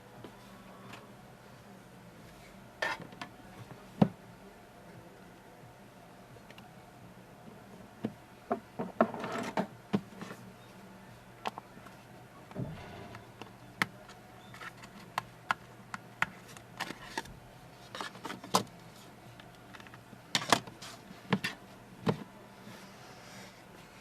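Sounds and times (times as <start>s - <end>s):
louder knocks: 12.6s - 14.0s.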